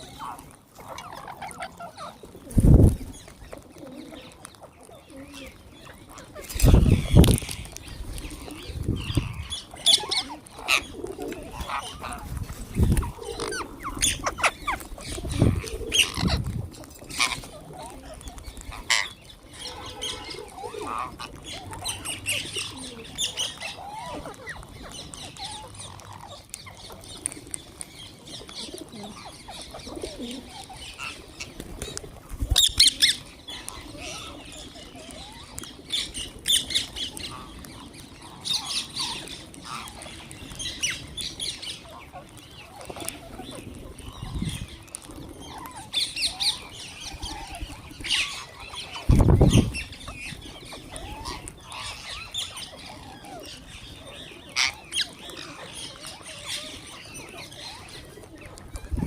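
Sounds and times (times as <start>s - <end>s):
parrots squawking: 9.0s - 12.3s, 13.1s - 16.4s, 17.1s - 26.8s, 32.6s - 44.6s, 45.4s - 58.0s.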